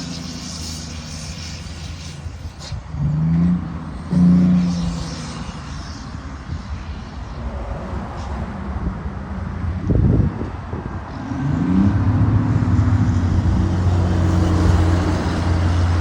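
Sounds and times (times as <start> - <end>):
truck throttle blips: 0.0 - 16.0.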